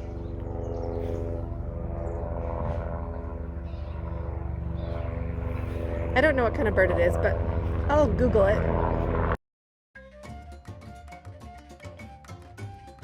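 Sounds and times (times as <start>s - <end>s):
engine drone: 0.0s - 9.4s.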